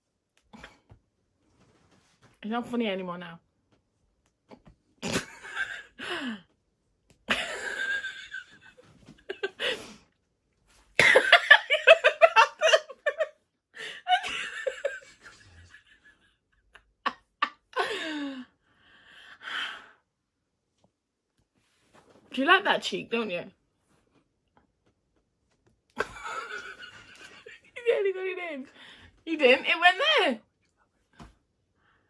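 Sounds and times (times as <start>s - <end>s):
people laughing: 11.0s - 13.3s.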